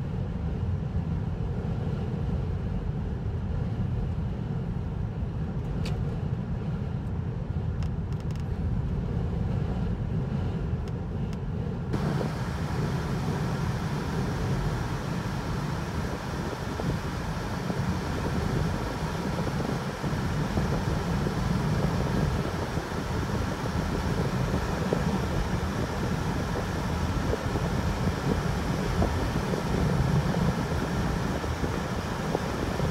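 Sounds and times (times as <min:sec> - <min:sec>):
vehicle engine and road rumble: 0:00.0 - 0:32.9
broadband hiss: 0:12.0 - 0:32.6.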